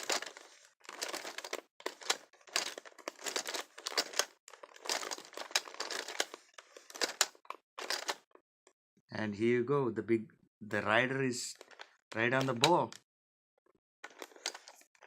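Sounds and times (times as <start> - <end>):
plastic toy parts clicking and rattling: 0.0 - 8.3, 11.6 - 13.0, 14.0 - 14.9.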